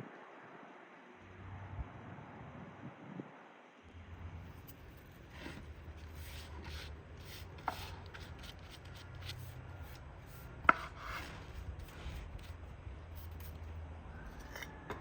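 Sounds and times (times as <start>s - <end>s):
knife chopping on cutting board: 10.6s - 11.4s.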